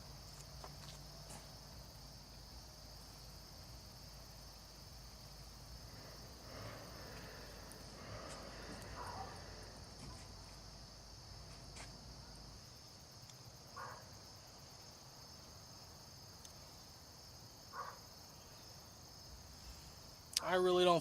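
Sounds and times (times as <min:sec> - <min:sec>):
insects chirring: 0:00.0 - 0:21.0
faint calls: 0:05.8 - 0:10.3.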